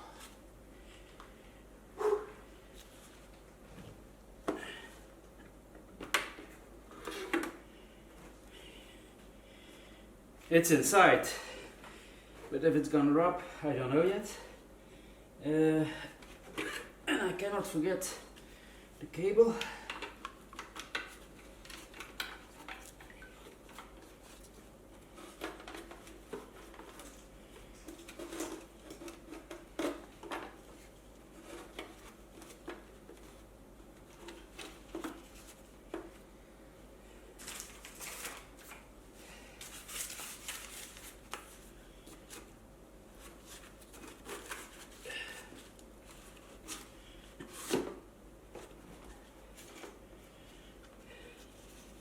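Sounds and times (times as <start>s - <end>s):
hands clicking and knocking parts: 19.6s - 24.0s.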